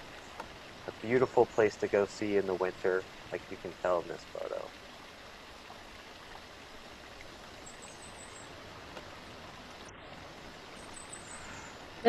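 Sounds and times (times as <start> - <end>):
waterfall rushing: 0.0 - 4.7
faint high chirps: 10.8 - 12.0.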